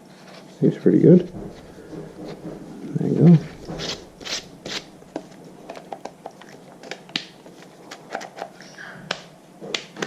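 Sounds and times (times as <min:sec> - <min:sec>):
rustling: 0:01.2 - 0:08.3.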